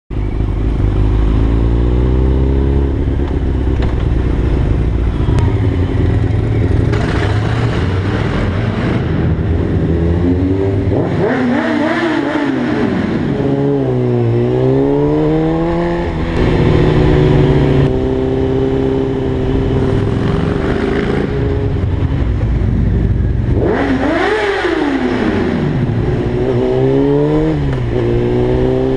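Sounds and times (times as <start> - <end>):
motorcycle engine revving: 0.1 - 28.9.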